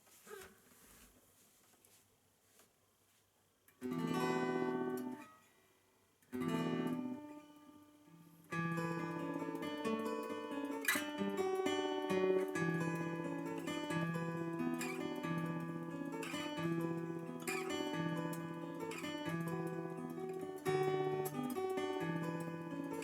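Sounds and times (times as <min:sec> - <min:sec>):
acoustic guitar chords ringing: 0:03.8 - 0:05.2, 0:06.4 - 0:23.0
fingerpicked acoustic guitar: 0:03.8 - 0:05.6, 0:06.2 - 0:23.0.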